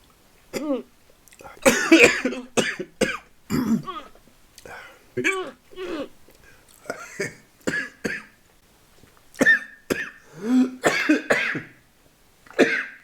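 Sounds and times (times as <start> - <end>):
man coughing harshly: 1.6 - 4.1, 9.4 - 11.8, 12.6 - 13.0.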